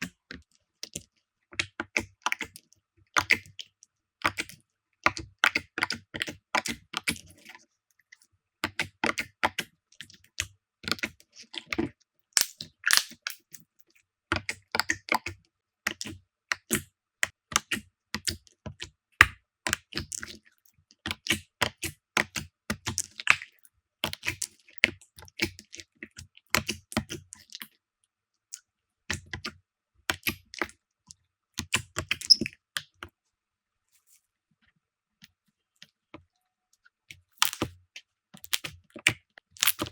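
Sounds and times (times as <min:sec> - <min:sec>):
slime clicking and popping: 0:12.4 - 0:13.2, 0:37.3 - 0:37.7, 0:38.4 - 0:39.9.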